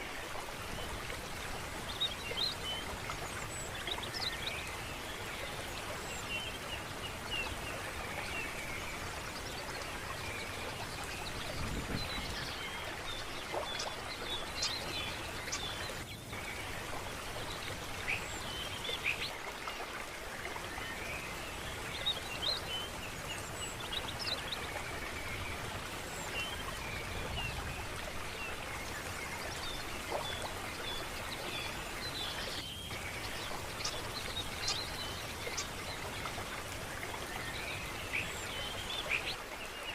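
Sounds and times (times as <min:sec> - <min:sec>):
running water: 0:00.0 - 0:39.9
birds chirping: 0:28.2 - 0:39.9.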